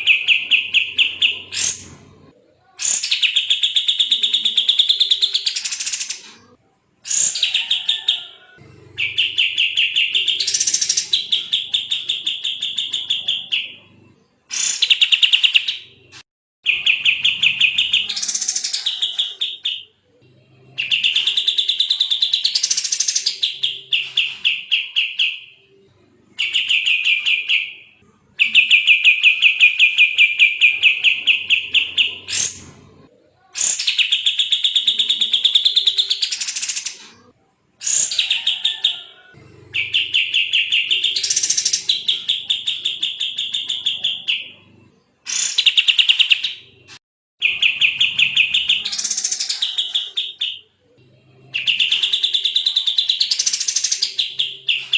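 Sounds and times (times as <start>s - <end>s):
bird singing fast trills: 39.8s - 44.6s, 47.4s - 50.7s, 51.4s - 54.9s.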